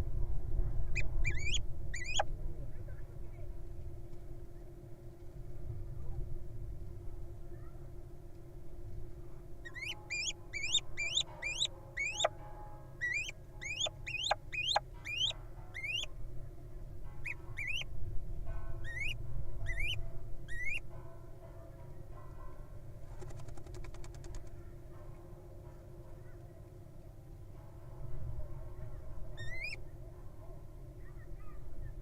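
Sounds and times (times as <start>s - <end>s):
low background rumble: 0.0s - 21.1s
owl squeaky calls: 1.0s - 2.3s, 9.7s - 12.3s, 13.0s - 16.1s, 17.3s - 17.9s, 18.8s - 20.9s, 29.4s - 29.8s.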